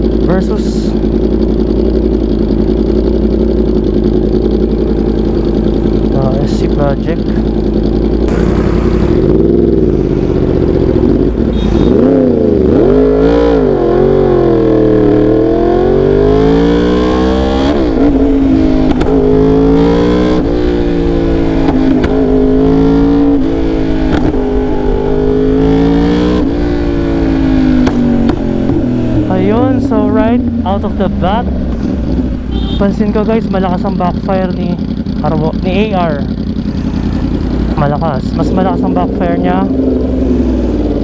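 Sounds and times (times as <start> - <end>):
motorcycle engine revving: 0.0 - 41.0
exhaust pops: 8.2 - 9.6, 18.7 - 19.2, 21.6 - 22.3, 24.0 - 24.4, 27.8 - 29.0.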